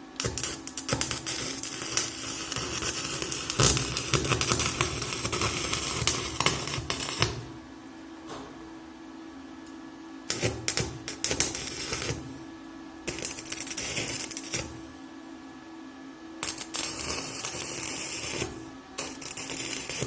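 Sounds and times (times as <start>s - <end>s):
welder hum: 0.0s - 7.8s, 9.6s - 15.1s, 16.4s - 20.0s
welding arc crackling: 0.2s - 7.6s, 10.3s - 12.4s, 13.1s - 15.0s, 16.4s - 20.0s.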